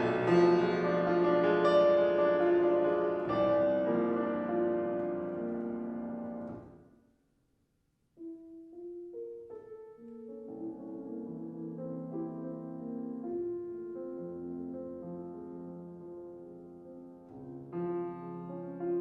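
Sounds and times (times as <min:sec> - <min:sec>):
classical piano playing: 0:00.0 - 0:06.9, 0:08.2 - 0:19.0.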